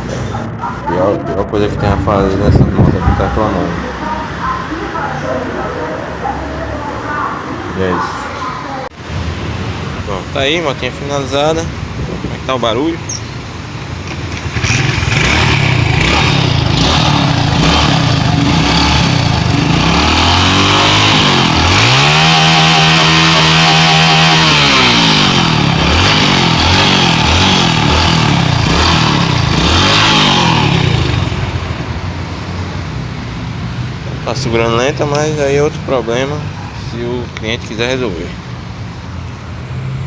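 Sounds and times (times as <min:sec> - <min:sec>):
small motorcycle engine revving: 0:14.1 - 0:31.6.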